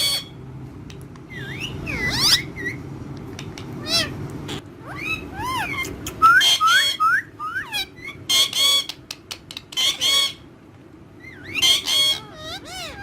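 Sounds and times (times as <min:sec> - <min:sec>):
parrots squawking harshly: 0:00.0 - 0:00.4, 0:01.3 - 0:02.8, 0:03.8 - 0:09.0, 0:09.6 - 0:10.5, 0:11.2 - 0:13.0
parrots whistling: 0:00.0 - 0:00.4, 0:01.3 - 0:02.9, 0:03.8 - 0:10.5, 0:11.2 - 0:13.0.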